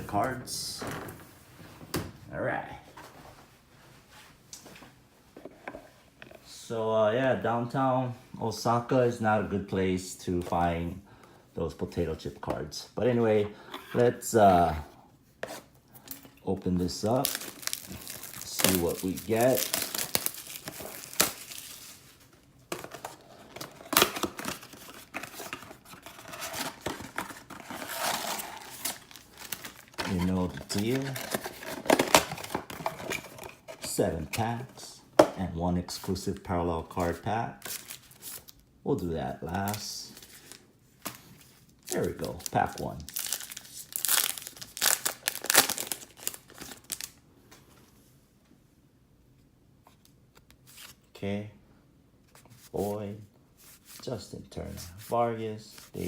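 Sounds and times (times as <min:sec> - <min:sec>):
packaging tearing and crinkling: 0:17.0 - 0:22.0, 0:22.9 - 0:33.4, 0:41.8 - 0:47.2.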